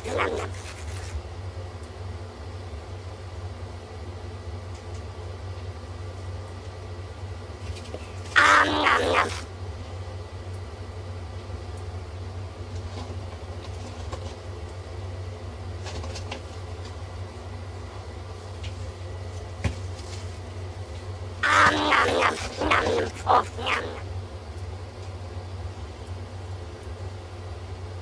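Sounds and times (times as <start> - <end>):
comic animal call effect: 0.0 - 0.6, 8.4 - 9.5, 21.4 - 24.1
steady low hum: 0.0 - 28.0.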